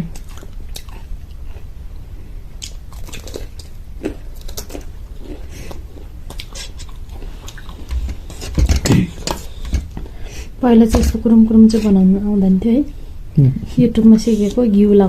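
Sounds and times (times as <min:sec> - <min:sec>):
crunchy chewing: 0:02.6 - 0:10.1.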